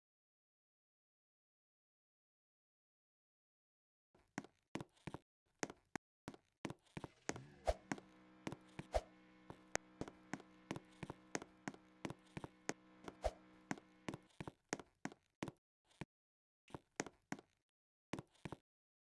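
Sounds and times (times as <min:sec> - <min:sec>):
steady hum: 0:07.3 - 0:14.4.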